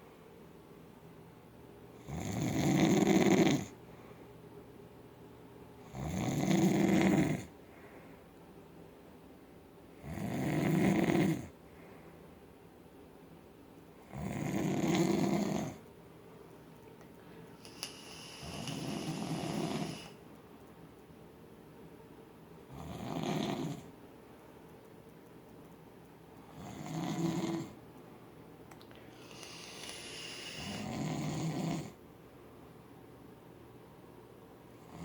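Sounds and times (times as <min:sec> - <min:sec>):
loud snoring: 0:02.0 - 0:03.7, 0:05.9 - 0:07.5, 0:10.0 - 0:11.5, 0:14.1 - 0:15.8, 0:17.7 - 0:20.2, 0:22.7 - 0:23.9, 0:26.5 - 0:27.8, 0:29.2 - 0:32.0.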